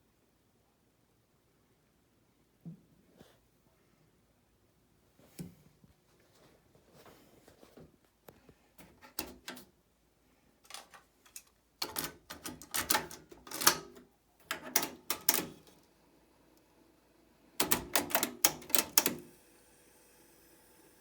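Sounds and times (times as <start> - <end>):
faint tape hiss: 0.0 - 11.8.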